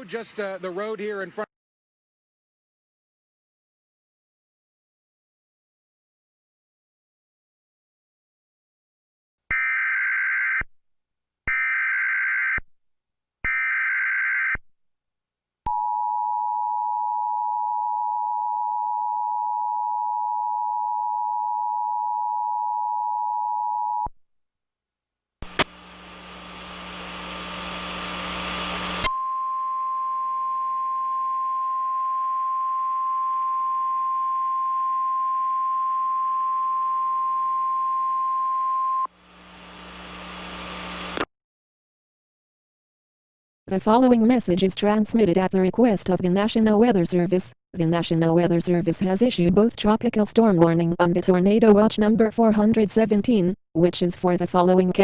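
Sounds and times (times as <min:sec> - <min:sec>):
static hiss: 0:25.4 - 0:29.0.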